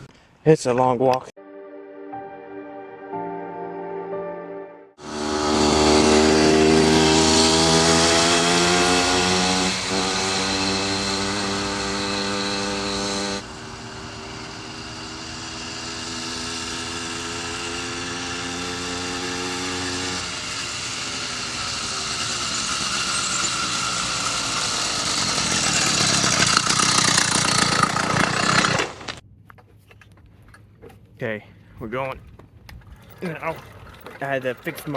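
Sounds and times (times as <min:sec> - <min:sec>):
motorized bicycle engine passing: 0:05.0 - 0:29.2, 0:32.8 - 0:34.9.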